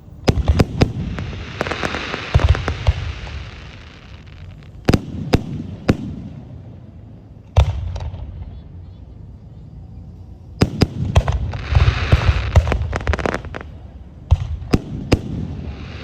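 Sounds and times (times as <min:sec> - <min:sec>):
fireworks cracking: 0:00.0 - 0:07.0, 0:10.6 - 0:16.0
fireworks crackling: 0:00.0 - 0:09.0, 0:10.6 - 0:16.0
fireworks booming: 0:00.2 - 0:08.7, 0:10.6 - 0:16.0.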